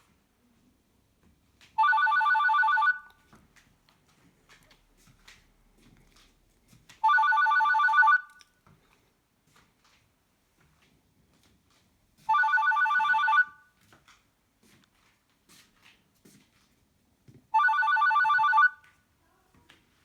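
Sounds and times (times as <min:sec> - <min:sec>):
phone ringtone warbling trill: 0:01.8 - 0:03.0, 0:07.1 - 0:08.4, 0:12.3 - 0:13.5, 0:17.6 - 0:18.8.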